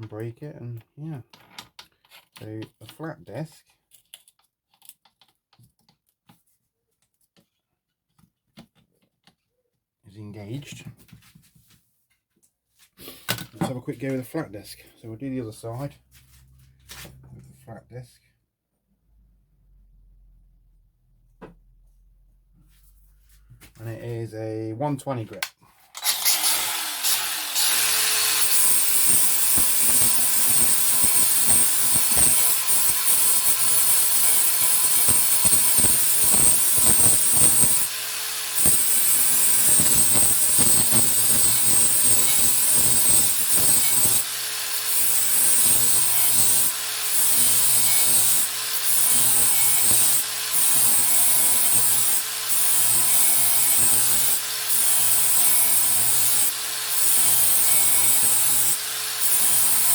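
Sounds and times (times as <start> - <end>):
angle grinder grinding steel: 25.9 - 59.9.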